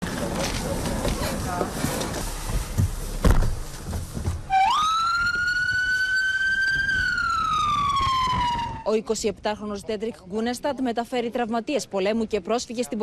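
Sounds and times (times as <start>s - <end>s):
street noise: 0.0s - 13.0s
thump: 2.8s - 4.4s
ambulance siren wailing: 4.5s - 8.9s.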